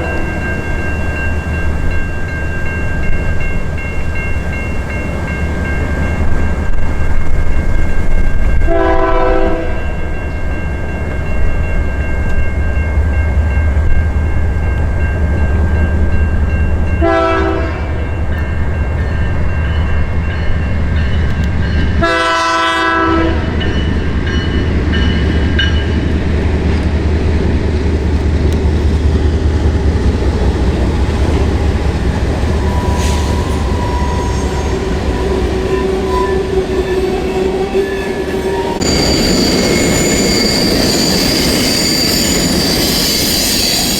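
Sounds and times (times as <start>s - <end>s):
diesel locomotive rumbling: 0.0s - 43.9s
train air horn blasts: 8.6s - 9.9s, 17.0s - 18.0s, 22.0s - 23.6s.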